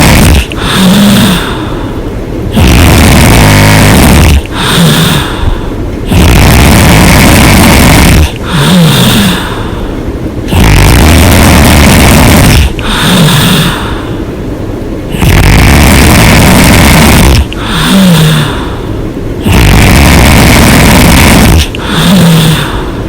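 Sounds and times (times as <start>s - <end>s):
woman snoring loudly: 0.0s - 1.7s, 2.5s - 9.6s, 10.5s - 14.0s, 15.1s - 18.8s, 19.4s - 22.9s.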